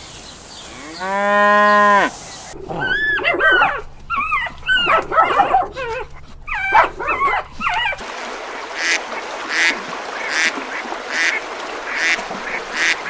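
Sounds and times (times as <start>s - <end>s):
high animal cries: 1.8s - 8.0s, 11.7s - 13.0s
ducks quacking: 2.5s - 13.0s.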